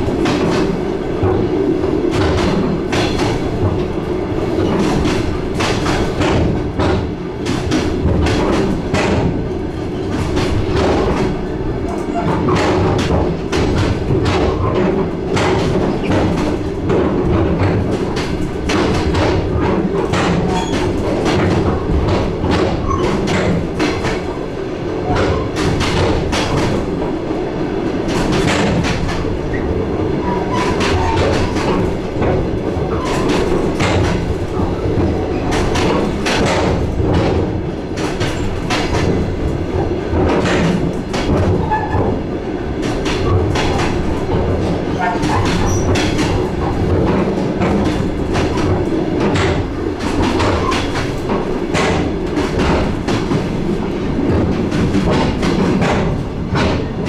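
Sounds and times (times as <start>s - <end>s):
train wheels clattering over rail joints: 0.0s - 57.0s.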